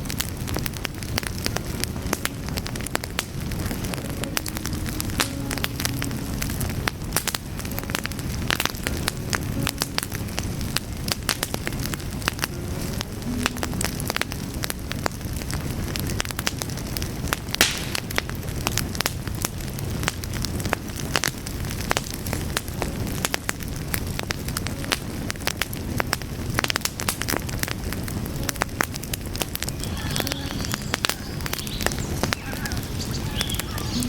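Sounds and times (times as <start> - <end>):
wood fire crackling and popping: 0.0 - 34.0.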